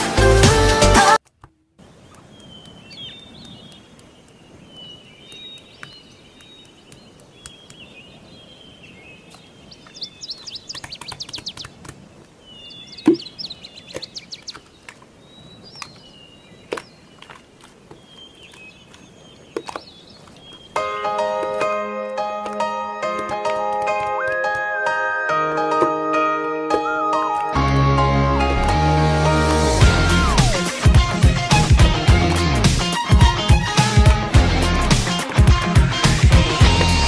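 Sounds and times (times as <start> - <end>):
small birds chirping: 1.8 - 21.6.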